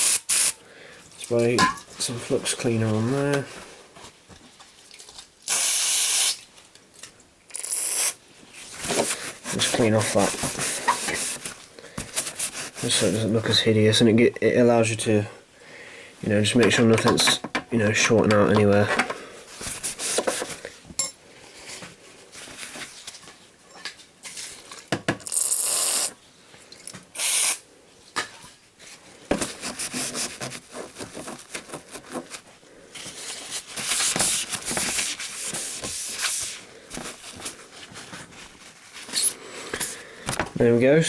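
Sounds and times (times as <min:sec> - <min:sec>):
aerosol spray hissing bursts: 0:00.0 - 0:00.6, 0:05.5 - 0:06.4, 0:27.2 - 0:27.6
scratchy rubbing on a board: 0:29.6 - 0:32.4.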